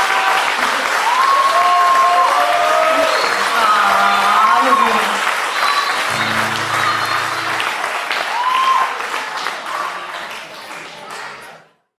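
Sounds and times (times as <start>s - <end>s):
cheers: 0.0s - 11.2s
audience applauding: 0.0s - 11.6s.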